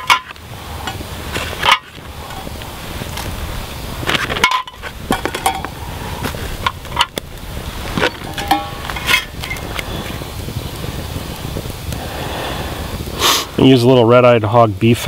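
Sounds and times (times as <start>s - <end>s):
metal utensils clinking on cookware: 8.0s - 9.6s.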